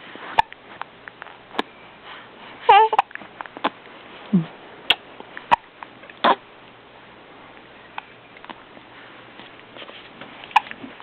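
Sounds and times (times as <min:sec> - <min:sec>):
baby hiccupping: 0:02.7 - 0:03.8, 0:04.4 - 0:06.5, 0:10.5 - 0:10.8.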